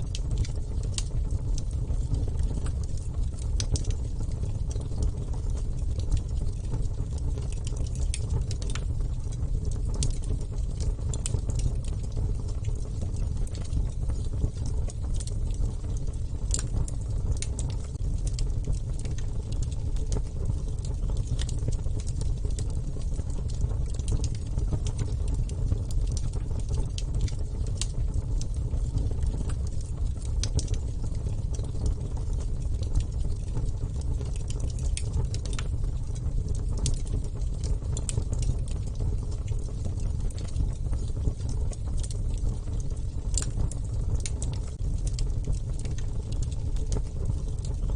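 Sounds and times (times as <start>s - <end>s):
fire crackles and pops: 0.0s - 47.9s
low rumble of flames: 0.0s - 47.9s.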